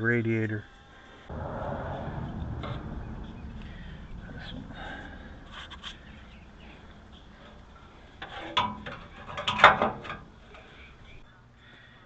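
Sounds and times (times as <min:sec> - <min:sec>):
hard parts clattering: 0:02.0 - 0:11.0.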